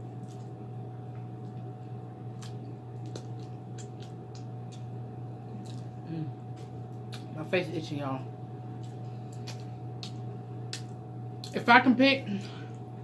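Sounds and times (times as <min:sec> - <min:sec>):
steady low hum: 0:00.0 - 0:13.0
wet mouth eating sounds: 0:01.2 - 0:07.3, 0:08.7 - 0:11.6.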